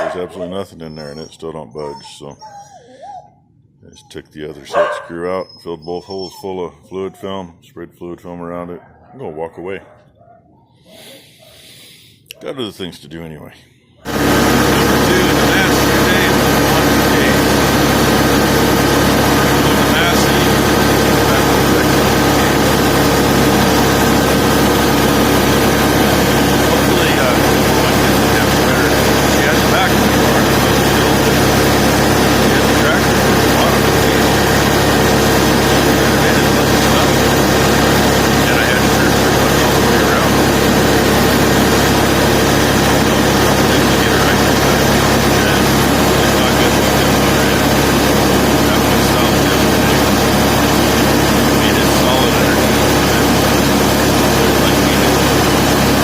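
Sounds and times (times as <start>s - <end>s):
tractor engine droning: 14.0s - 56.0s.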